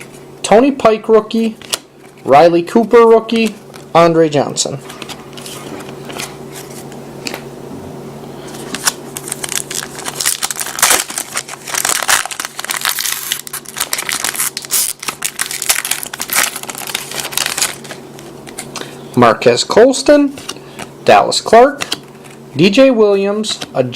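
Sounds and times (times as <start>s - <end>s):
card pack wrapper crinkling and tearing: 8.5s - 18.9s.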